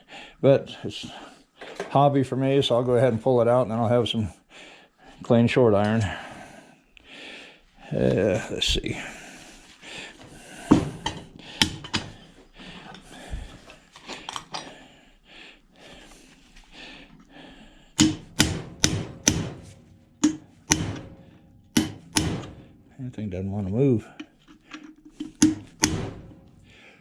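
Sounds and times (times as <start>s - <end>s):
hammer striking motor: 18.0s - 22.7s, 25.1s - 26.6s
handling clatter: 24.1s - 26.7s.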